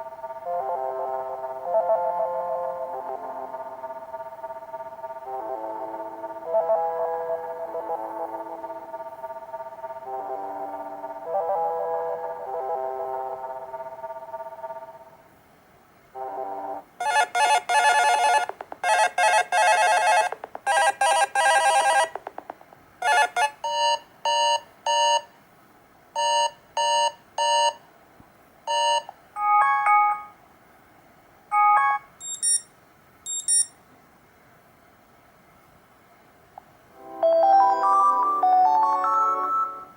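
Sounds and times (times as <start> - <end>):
high-pitched beeps: 31.6 - 32.7, 33.3 - 33.8
quick phone beeps: 31.6 - 33.8.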